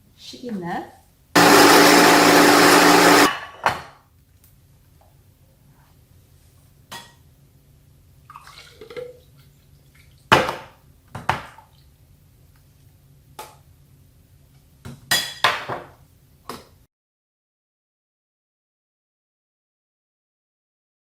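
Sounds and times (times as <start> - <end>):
liquid pouring: 8.3 - 9.3.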